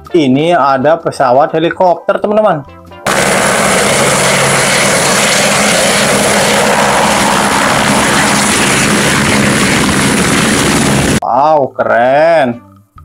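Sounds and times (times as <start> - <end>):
helicopter rotor and engine: 3.1 - 11.2.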